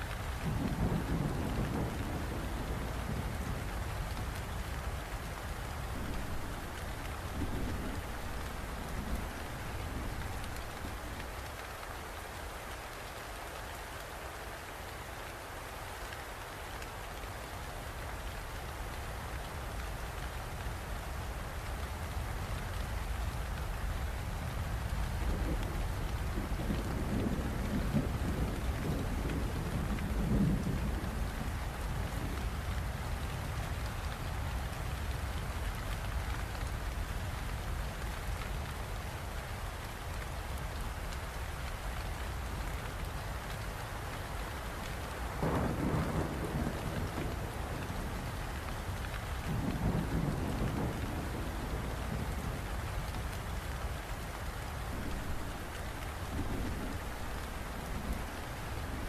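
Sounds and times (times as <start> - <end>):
steady rain falling: 0.0 - 59.0
thunder rolling: 45.4 - 48.2.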